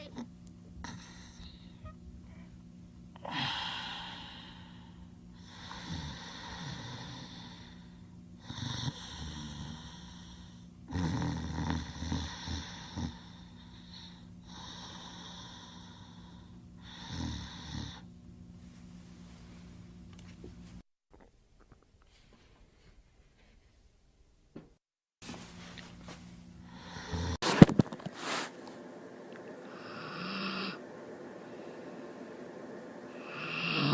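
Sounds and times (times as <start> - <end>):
cartoon snoring: 5.4 - 18.1, 26.7 - 27.4, 29.6 - 30.8, 31.6 - 33.9.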